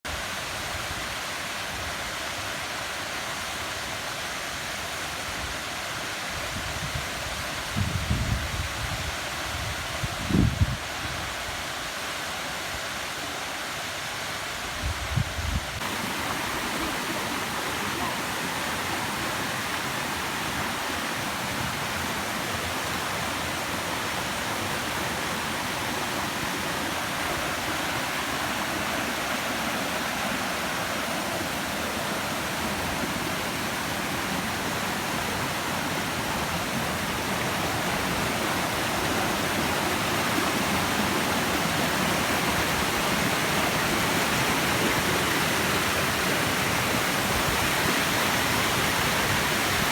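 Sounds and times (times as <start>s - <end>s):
waterfall rushing: 15.8s - 49.9s.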